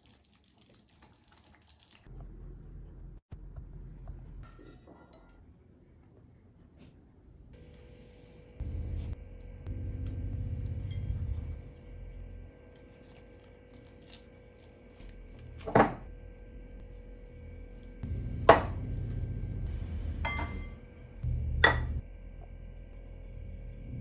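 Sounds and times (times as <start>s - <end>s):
dishware clinking: 20.3s - 20.8s, 21.6s - 22.0s.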